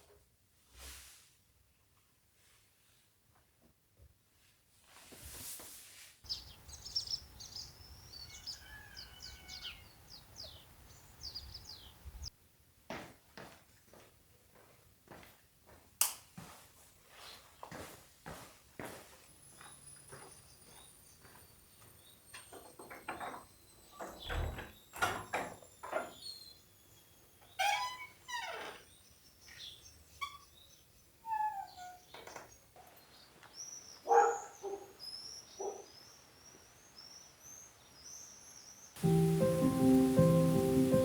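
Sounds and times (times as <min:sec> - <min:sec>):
songbirds calling: 0:06.3 - 0:12.3, 0:25.8 - 0:41.0
footsteps on a trail: 0:12.9 - 0:22.0.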